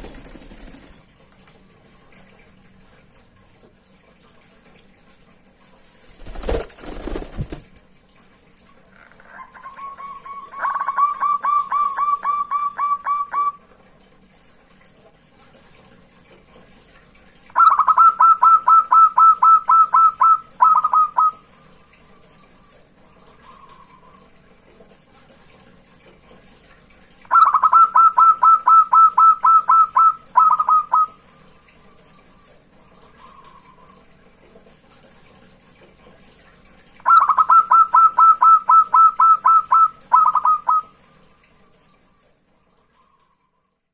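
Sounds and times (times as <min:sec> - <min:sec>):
dove cooing: 0:09.0 - 0:13.6, 0:17.6 - 0:21.4, 0:27.3 - 0:31.2, 0:37.1 - 0:40.9.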